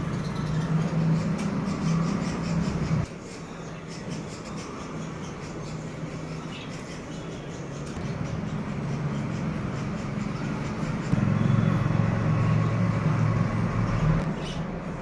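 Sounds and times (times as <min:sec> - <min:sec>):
low engine-like hum: 0:04.0 - 0:15.0.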